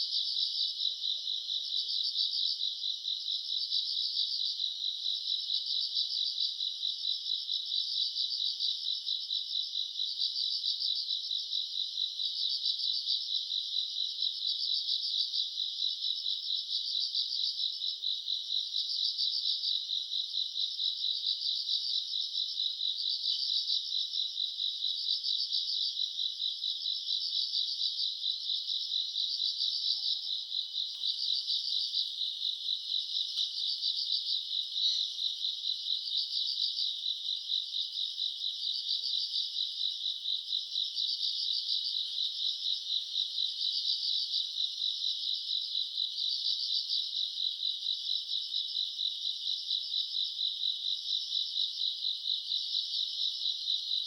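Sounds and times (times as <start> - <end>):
crickets chirping: 0.0 - 54.0.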